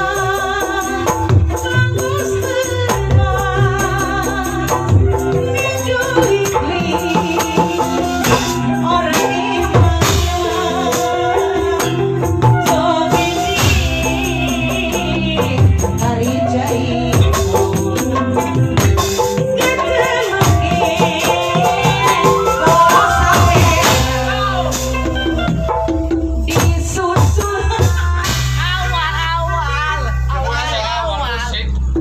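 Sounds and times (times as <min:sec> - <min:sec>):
sustained bass notes: 0:00.0 - 0:27.2
wavering melody line: 0:16.3 - 0:26.4.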